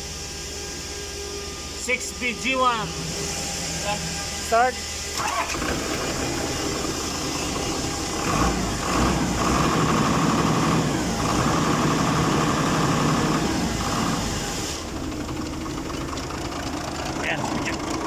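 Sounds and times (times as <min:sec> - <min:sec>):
forklift diesel engine revving: 0:05.1 - 0:18.0.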